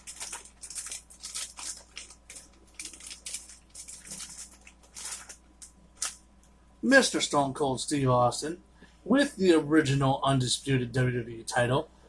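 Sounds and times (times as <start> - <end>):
plastic packaging crinkling and ripping: 0.0 - 6.3.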